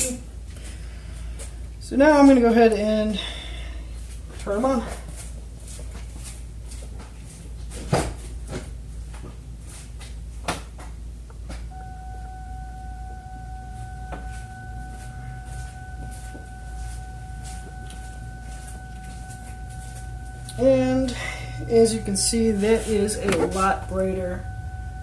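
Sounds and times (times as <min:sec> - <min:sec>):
turn signal ticking: 0:11.3 - 0:25.0
steady electronic tone: 0:11.7 - 0:25.0.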